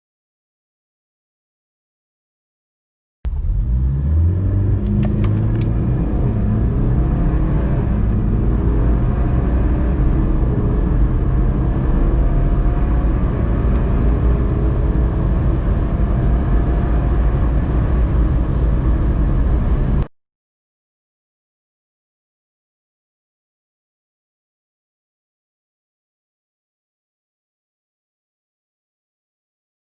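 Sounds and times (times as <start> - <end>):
car engine accelerating hard: 3.3 - 20.1.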